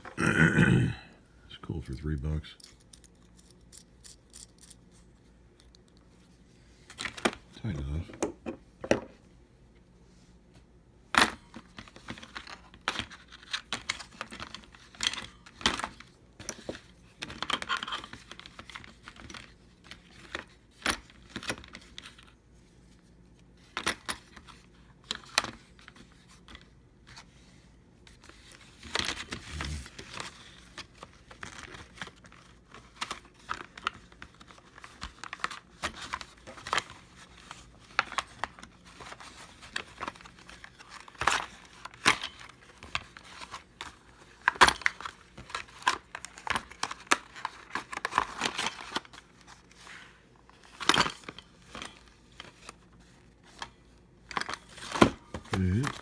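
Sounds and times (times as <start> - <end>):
metal tools clicking and rattling: 2.6 - 4.8.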